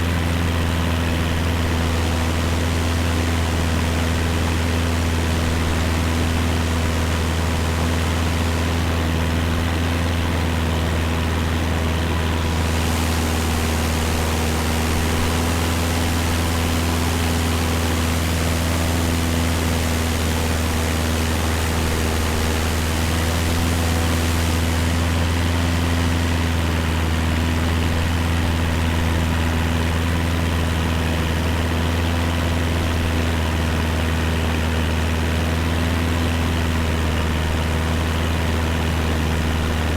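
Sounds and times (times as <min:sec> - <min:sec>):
propeller plane engine droning: 0:00.0 - 0:39.9
air rushing: 0:12.4 - 0:18.2.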